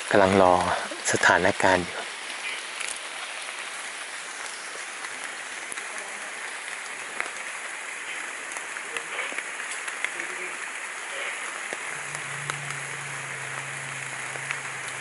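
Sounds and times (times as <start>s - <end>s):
forest ambience hiss: 0.0s - 15.0s
faint ticks: 11.2s - 15.0s.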